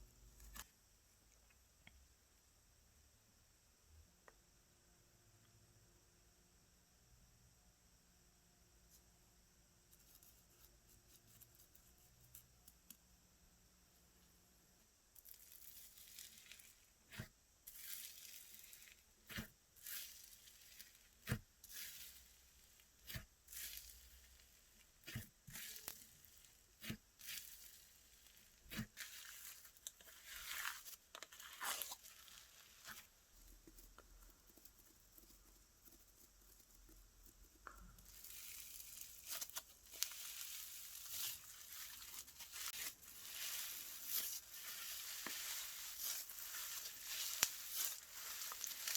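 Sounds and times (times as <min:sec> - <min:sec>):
slime popping and crackling: 0:26.8 - 0:33.0, 0:38.0 - 0:48.9.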